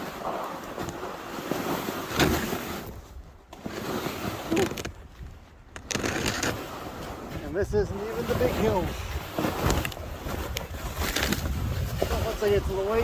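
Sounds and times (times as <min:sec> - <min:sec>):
footsteps and sled runners in snow: 0:00.0 - 0:13.0
wind on microphone: 0:04.2 - 0:13.0.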